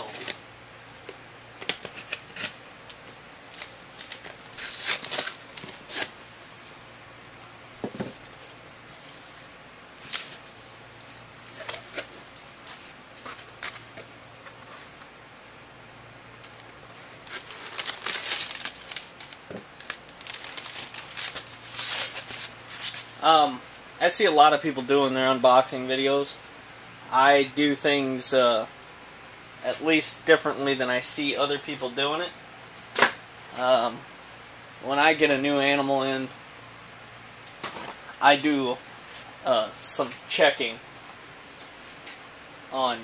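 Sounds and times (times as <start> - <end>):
tape and cardboard tearing: 1.6 - 6.2, 16.4 - 23.1
packing material crinkling: 1.6 - 6.8, 10.0 - 14.6, 16.4 - 23.2.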